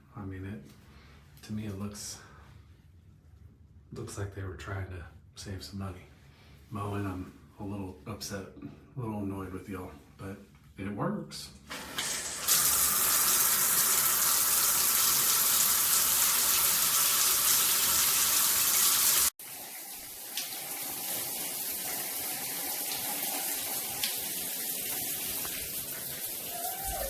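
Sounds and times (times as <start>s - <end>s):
shower head spraying water: 11.7s - 19.3s.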